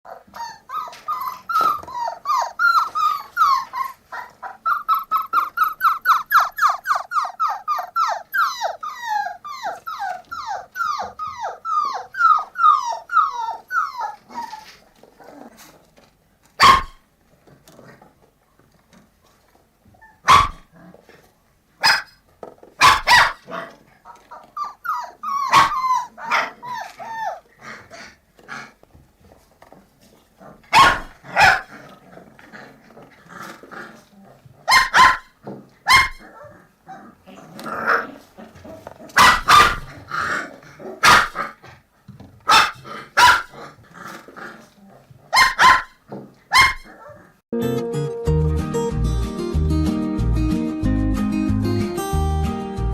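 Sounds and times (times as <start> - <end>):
puppies yelping: 0.1 - 15.6, 22.8 - 28.2, 30.7 - 32.0, 34.6 - 41.5, 45.4 - 47.4
puppy barking: 16.6 - 17.0, 20.2 - 20.7, 21.8 - 22.2, 22.8 - 27.4, 30.6 - 31.7, 34.6 - 37.1, 37.8 - 41.6, 42.5 - 43.6, 45.3 - 47.3.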